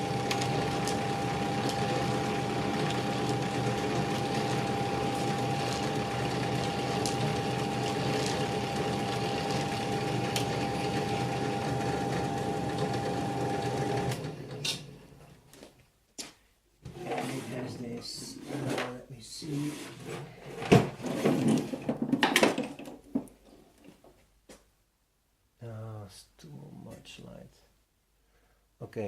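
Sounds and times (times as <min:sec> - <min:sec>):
metal lathe whirring and whining: 0:00.0 - 0:14.4.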